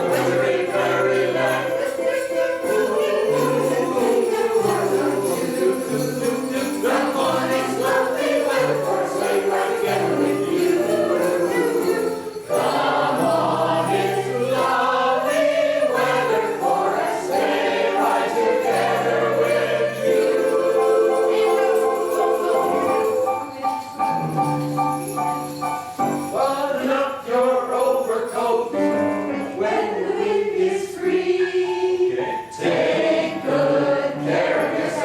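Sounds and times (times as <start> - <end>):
people singing: 0.0 - 23.9, 26.0 - 35.0
sleigh bells jingling: 0.0 - 35.0.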